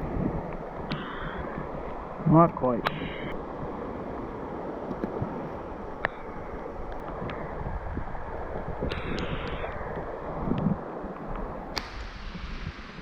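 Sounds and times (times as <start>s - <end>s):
wind buffeting microphone: 0.0s - 13.0s
sharp click: 11.7s - 12.3s.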